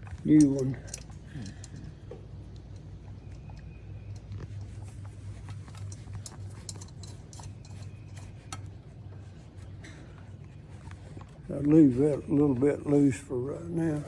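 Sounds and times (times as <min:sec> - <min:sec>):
metal hardware clinking: 0:00.0 - 0:02.1, 0:05.3 - 0:08.7
steady low hum: 0:00.0 - 0:14.0.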